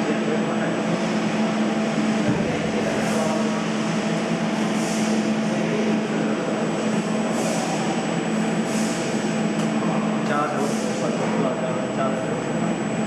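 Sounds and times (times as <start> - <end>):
workshop machinery humming: 0.0 - 13.0
air hissing: 8.6 - 9.3.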